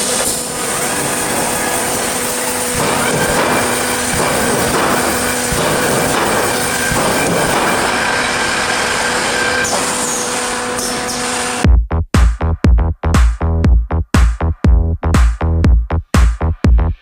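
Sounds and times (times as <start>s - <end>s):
steady whining tones: 0.0s - 11.6s
welding production line running: 0.0s - 11.6s.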